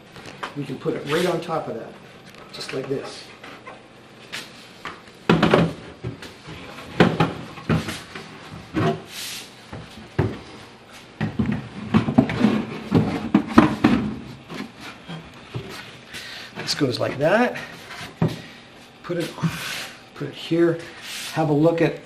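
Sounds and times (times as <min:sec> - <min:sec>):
cabinet parts knocking: 0:05.3 - 0:06.2.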